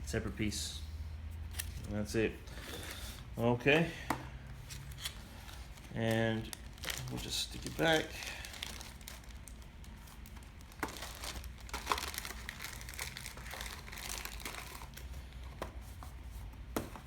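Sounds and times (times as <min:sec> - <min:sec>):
paper rustling and crinkling: 0:04.6 - 0:17.0.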